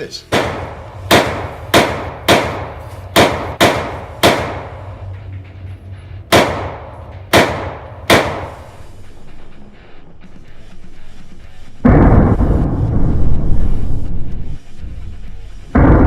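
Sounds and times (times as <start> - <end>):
gunshots with echo: 0.3 - 5.4, 6.3 - 8.8.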